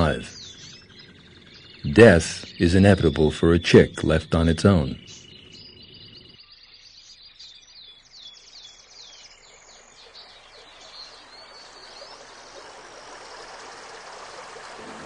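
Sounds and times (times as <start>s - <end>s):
birds chirping: 0.0s - 15.0s
running water: 9.9s - 15.0s.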